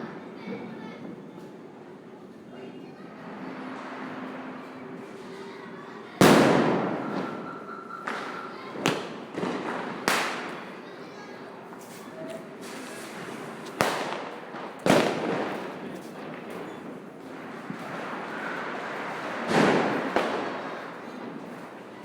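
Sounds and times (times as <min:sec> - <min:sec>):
firecrackers bursting with echo: 0:06.2 - 0:11.0, 0:11.7 - 0:22.0.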